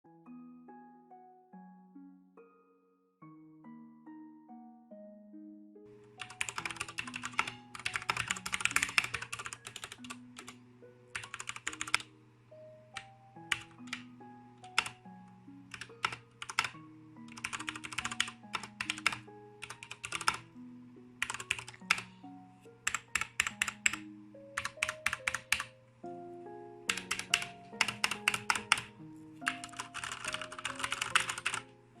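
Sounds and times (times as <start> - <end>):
mechanical keyboard keys clacking: 6.1 - 12.1, 13.0 - 15.0, 15.7 - 20.4, 21.2 - 22.1, 22.8 - 24.0, 24.6 - 25.7, 26.9 - 31.7.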